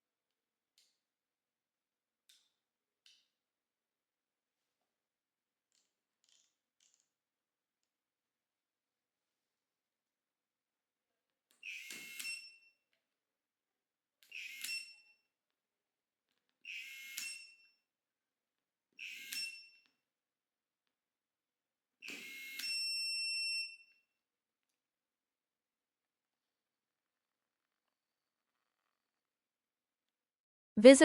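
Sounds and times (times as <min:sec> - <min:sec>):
electric screwdriver whirring: 0:22.0 - 0:22.8.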